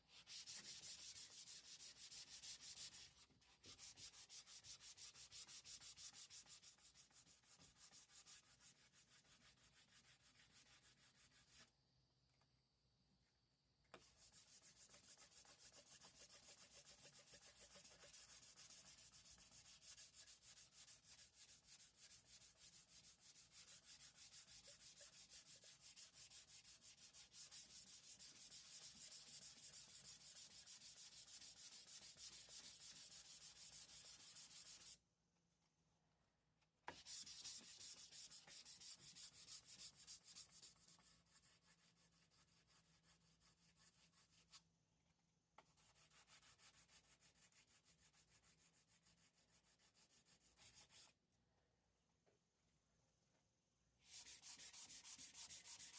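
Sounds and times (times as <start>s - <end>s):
sandpaper rubbing fiberglass: 0.1s - 3.1s, 3.7s - 11.6s, 14.1s - 35.0s, 36.9s - 44.3s, 54.1s - 55.9s.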